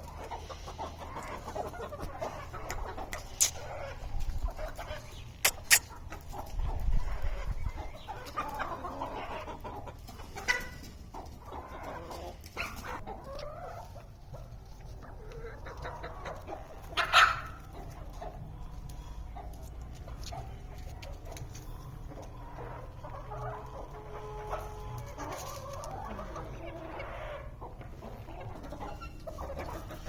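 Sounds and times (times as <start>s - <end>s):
hens clucking: 0.0s - 30.0s
hen squawking: 5.4s - 6.0s.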